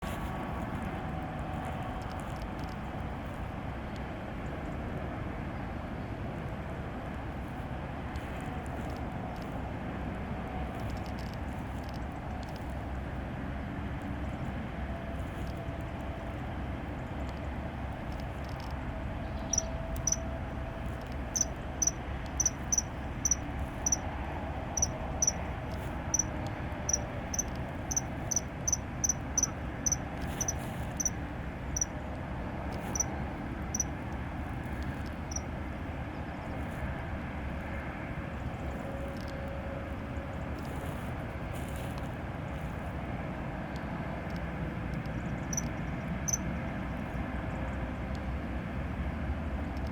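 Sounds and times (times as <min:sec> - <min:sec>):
low steady rumble: 0:00.0 - 0:49.9.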